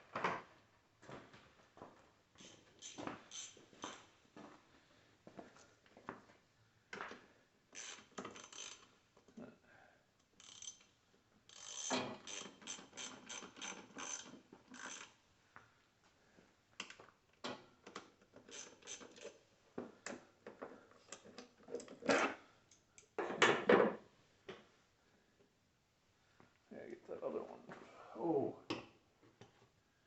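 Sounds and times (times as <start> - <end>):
socket ratchet clicking: 2.4 - 4.0, 7.8 - 8.9, 10.4 - 10.9, 11.5 - 15.2, 18.4 - 19.4.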